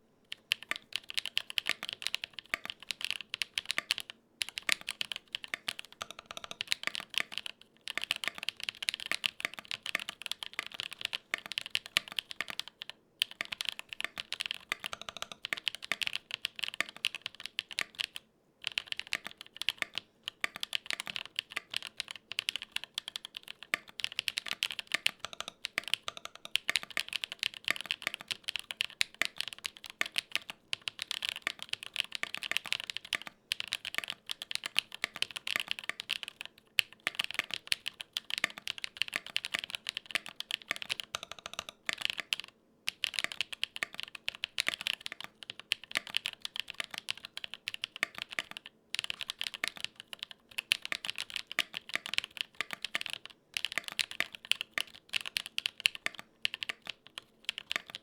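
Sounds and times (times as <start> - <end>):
mechanical keyboard typing: 0.4 - 58.0.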